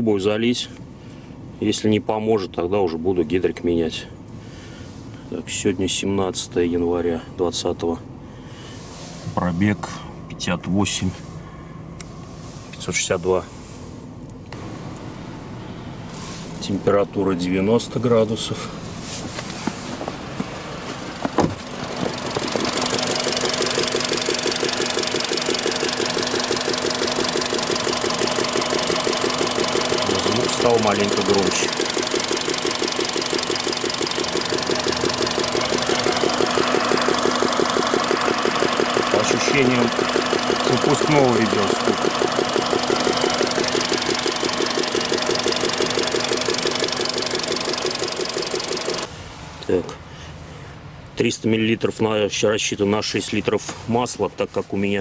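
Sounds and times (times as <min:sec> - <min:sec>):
car engine idling with ticking: 0:19.6 - 0:49.1.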